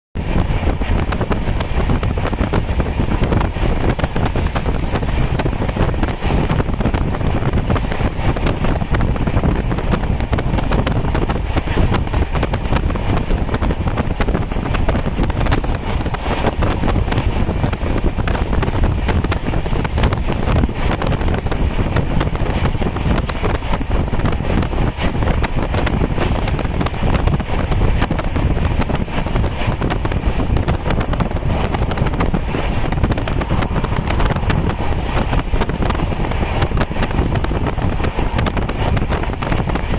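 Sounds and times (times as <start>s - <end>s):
wind buffeting microphone: 0.2s - 39.9s.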